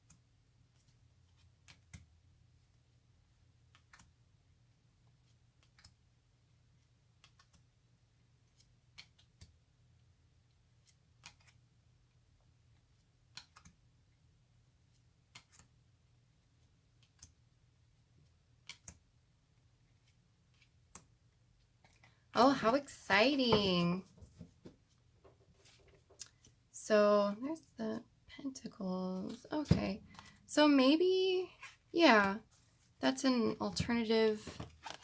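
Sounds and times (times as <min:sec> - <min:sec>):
cards being flipped and laid down: 0:10.8 - 0:11.6, 0:29.3 - 0:30.4, 0:34.4 - 0:35.0.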